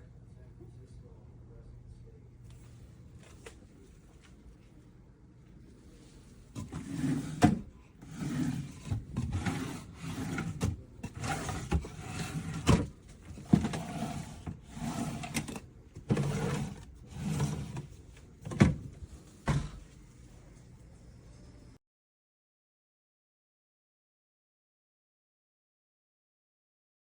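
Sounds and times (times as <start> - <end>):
rubbing and scraping noises: 5.7 - 21.0.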